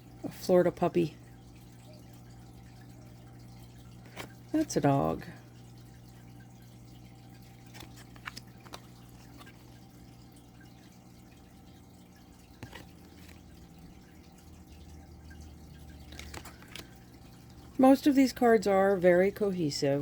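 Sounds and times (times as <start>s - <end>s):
faint steady hum: 0.0s - 20.0s
cards clicking being flipped: 7.6s - 9.7s, 12.6s - 13.4s, 16.1s - 16.9s.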